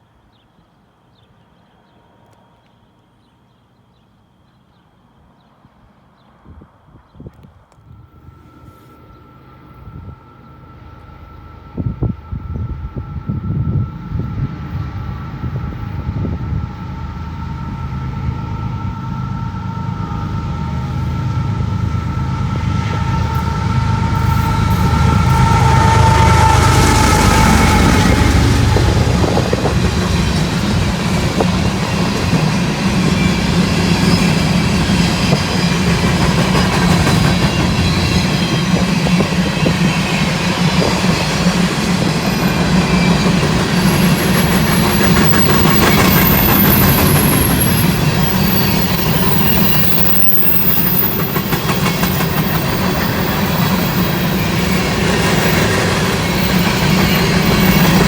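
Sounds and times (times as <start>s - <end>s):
train wheels clicking and rumbling: 8.3s - 58.0s
high-pitched wheel squeal: 17.6s - 35.9s, 42.2s - 58.0s.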